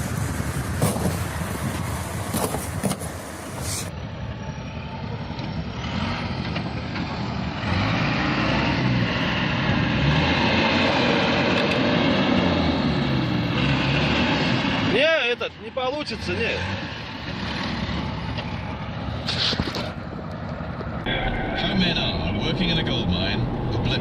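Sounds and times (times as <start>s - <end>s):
vehicle engine running: 16.3s - 24.0s.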